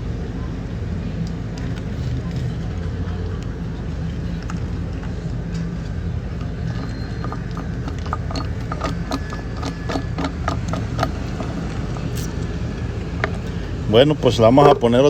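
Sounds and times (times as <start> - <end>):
steady low hum: 0.0 - 15.0
pump pulley bearing clicking: 4.4 - 15.0.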